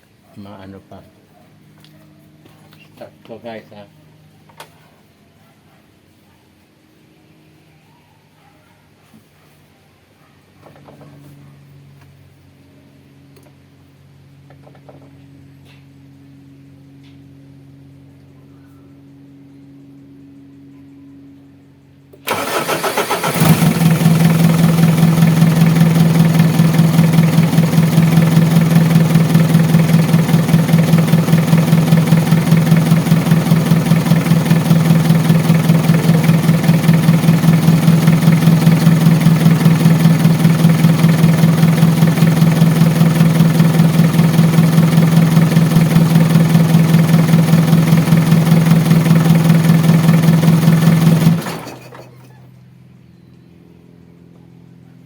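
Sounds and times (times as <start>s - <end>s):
diesel engine idling: 22.3s - 51.8s.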